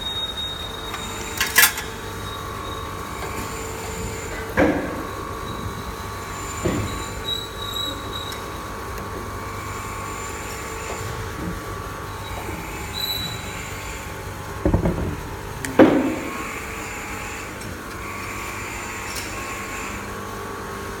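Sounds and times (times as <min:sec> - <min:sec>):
machine hum with high whine: 0:00.0 - 0:21.0
loud knocks: 0:14.6 - 0:16.5.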